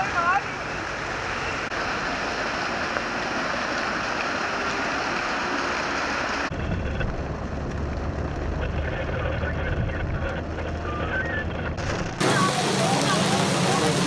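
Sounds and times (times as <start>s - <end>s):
heavy rain: 0.0s - 14.0s
deep steady rumble: 0.9s - 14.0s
wind on microphone: 6.4s - 12.2s
faint voices: 8.6s - 14.0s.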